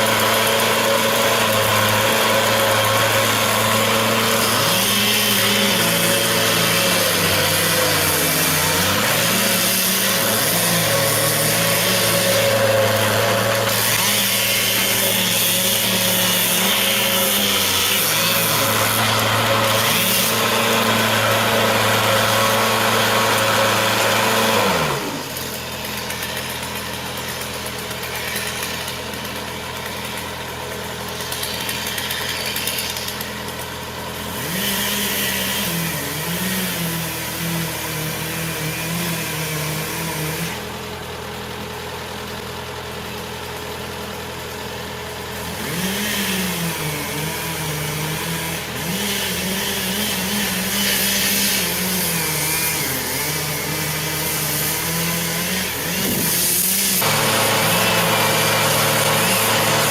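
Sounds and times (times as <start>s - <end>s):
engine running: 52.4s - 59.9s.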